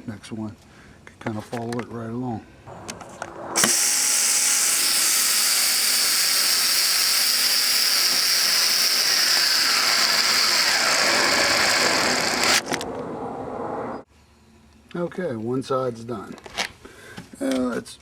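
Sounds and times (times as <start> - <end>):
power drill boring into wood: 3.6 - 12.7.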